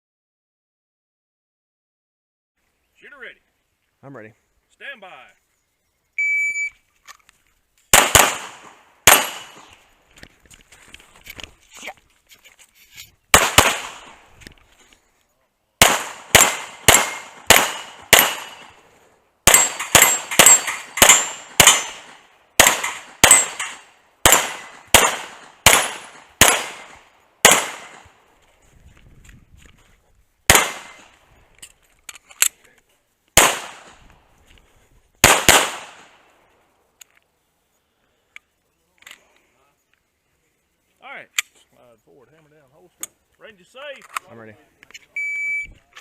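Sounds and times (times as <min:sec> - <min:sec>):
pistol shots: 0:07.9 - 0:09.8, 0:13.3 - 0:14.3, 0:15.8 - 0:18.8, 0:19.4 - 0:28.2, 0:30.5 - 0:31.2, 0:33.4 - 0:34.0, 0:35.2 - 0:36.2.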